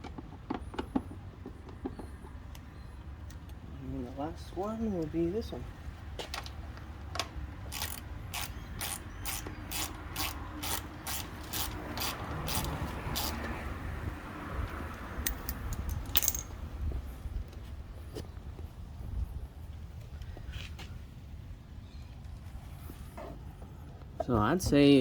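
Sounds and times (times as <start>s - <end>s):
hand ratchet clicking: 7.7s - 13.6s.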